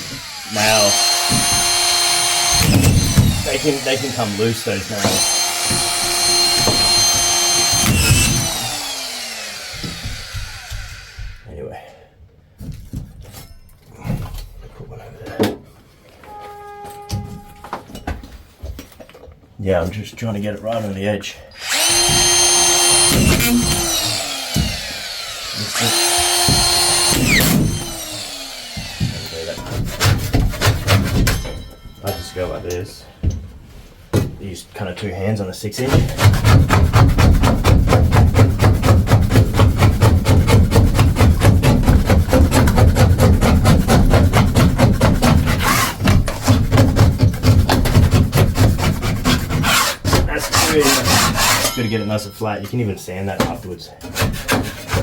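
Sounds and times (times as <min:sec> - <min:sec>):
drywall knife scraping plaster: 0:00.0 - 0:11.4, 0:21.7 - 0:31.3, 0:35.8 - 0:52.1, 0:54.0 - 0:55.0
power screwdriver whining: 0:00.0 - 0:11.4, 0:21.6 - 0:29.6.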